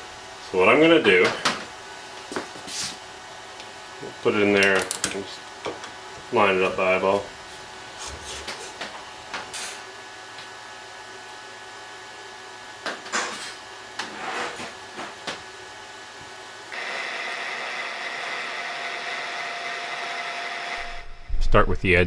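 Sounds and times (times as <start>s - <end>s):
milling machine spindle whine: 16.7s - 21.3s.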